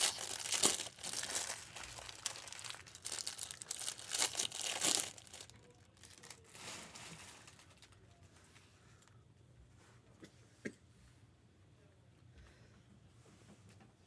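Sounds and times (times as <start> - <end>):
card pack wrappers torn and crinkled: 0.0 - 6.6.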